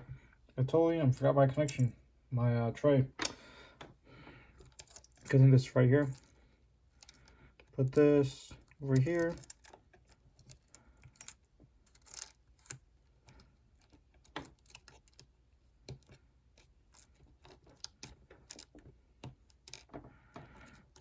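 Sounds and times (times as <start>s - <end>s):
small clicks and taps of phone parts: 8.8s - 21.0s.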